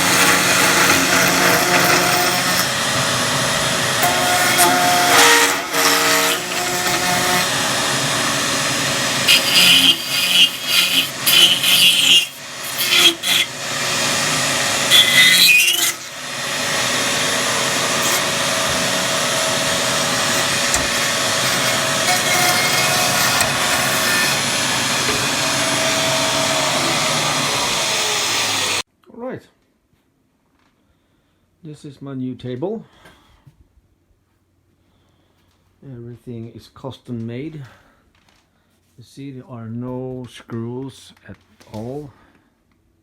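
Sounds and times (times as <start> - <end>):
cutting or grinding bursts: 0.0 - 28.8
power tool running: 0.0 - 28.8.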